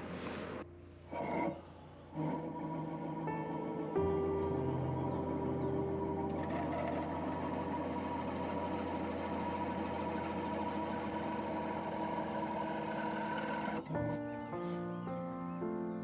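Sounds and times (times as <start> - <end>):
music: 0.2 - 7.2, 13.8 - 16.0
wood lathe cutting with hum: 2.2 - 13.9.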